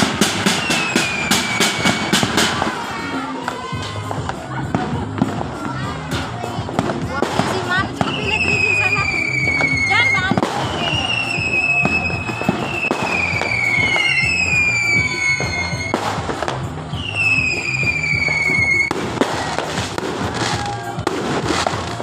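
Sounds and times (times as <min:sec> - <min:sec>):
whistling rockets: 0:00.0 - 0:02.9, 0:07.4 - 0:22.0
firework bangs and crackling: 0:00.0 - 0:22.0
music with bass line: 0:00.0 - 0:22.0.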